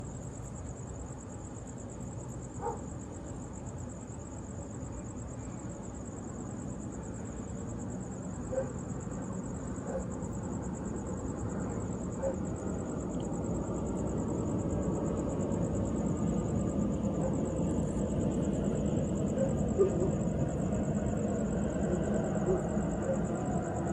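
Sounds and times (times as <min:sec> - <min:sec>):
low traffic rumble: 0:05.8 - 0:23.9.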